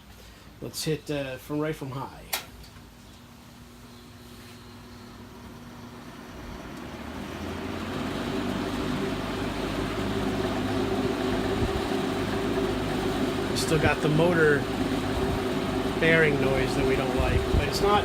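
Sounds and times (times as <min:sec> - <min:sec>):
box fan motor hum: 0:01.6 - 0:18.0.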